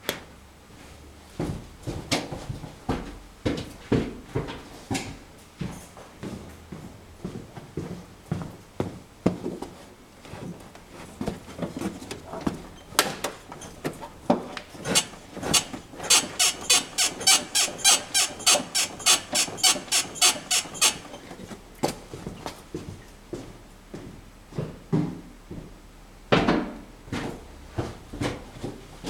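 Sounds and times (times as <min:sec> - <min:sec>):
suspension creaks and knocks: 0:11.2 - 0:21.5
sharp suspension squeaks: 0:14.8 - 0:21.4.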